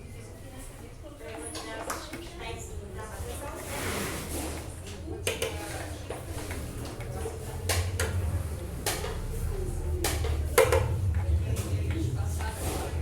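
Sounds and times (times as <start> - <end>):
low hum: 7.3 - 13.0.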